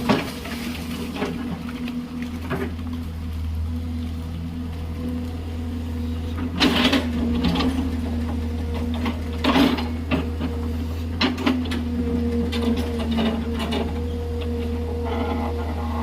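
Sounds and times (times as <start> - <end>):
bucket scraping gravelly soil: 0.0 - 11.2
diesel engine running: 0.0 - 16.0.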